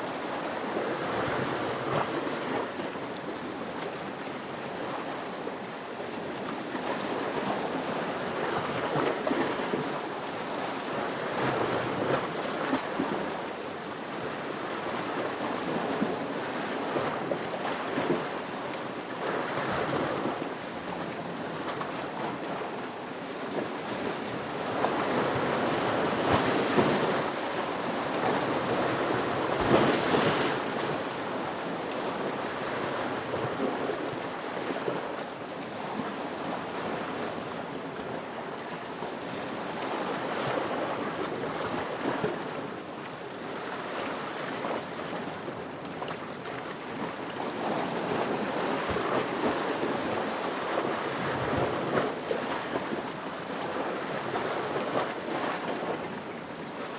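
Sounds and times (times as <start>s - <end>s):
ocean waves breaking: 23.6s - 35.0s.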